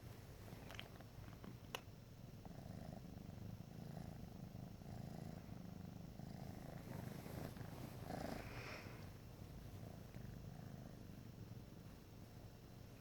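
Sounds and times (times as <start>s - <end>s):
cat purring: 0.0s - 13.0s.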